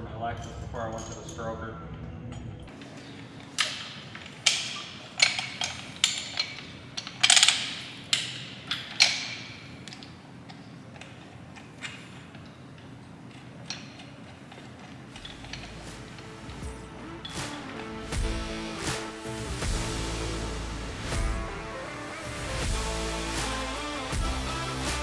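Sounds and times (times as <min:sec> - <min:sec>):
metal tools clanking: 0:02.7 - 0:18.8.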